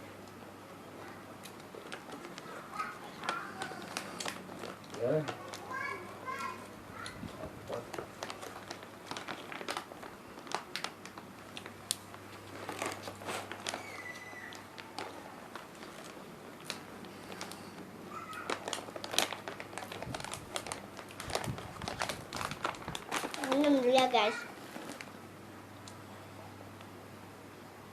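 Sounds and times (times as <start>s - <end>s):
bag crinkling: 1.6s - 25.2s
chips crunching while chewing: 8.0s - 23.8s.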